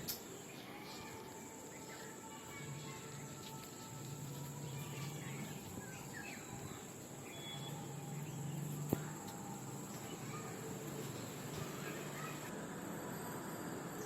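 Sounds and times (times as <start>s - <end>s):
faint bird chirps: 4.4s - 12.5s.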